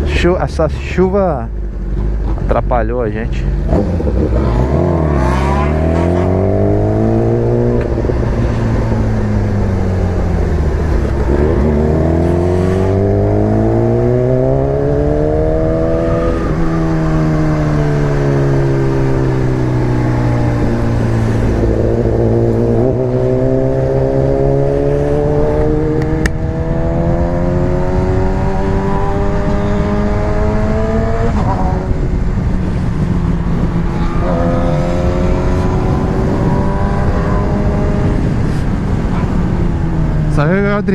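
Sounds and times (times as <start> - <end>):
motorcycle engine accelerating: 3.5 - 40.9
wind rush: 3.7 - 40.9.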